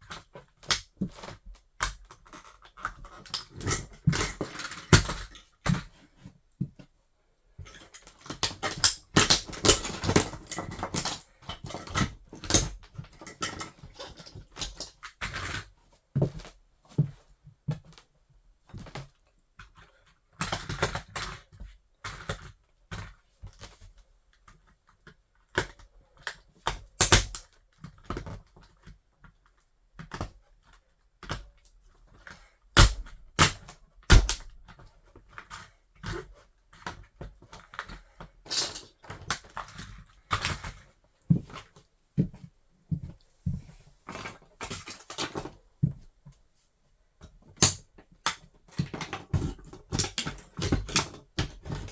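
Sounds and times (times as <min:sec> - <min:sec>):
toy car crunching and cracking: 0:08.5 - 0:11.2.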